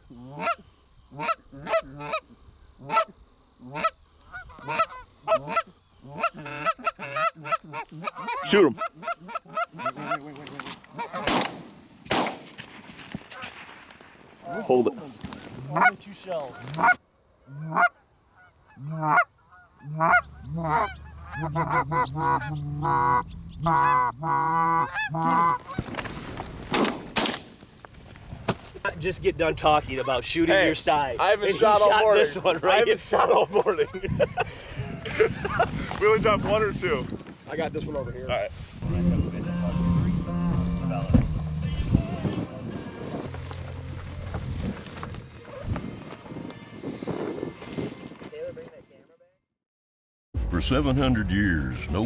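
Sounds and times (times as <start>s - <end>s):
goose honking: 0.1s - 2.2s, 2.8s - 11.3s, 15.6s - 26.0s
shotgun blast: 11.2s - 13.8s, 26.7s - 27.6s.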